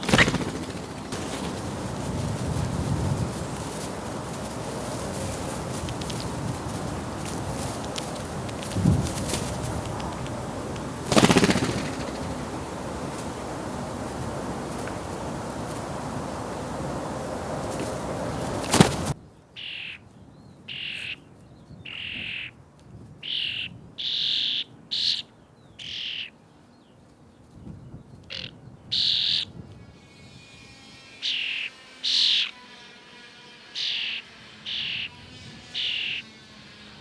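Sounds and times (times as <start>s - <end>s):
steady hiss: 0.0s - 19.2s
starling chicks begging calls: 0.0s - 20.0s, 23.2s - 26.4s, 28.3s - 29.5s, 31.2s - 32.7s, 33.6s - 36.6s.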